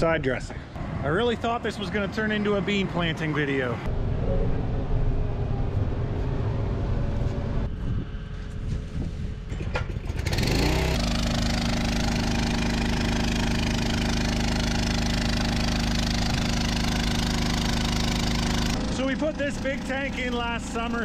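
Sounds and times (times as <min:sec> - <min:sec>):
pump engine revving and running: 0:09.8 - 0:21.0.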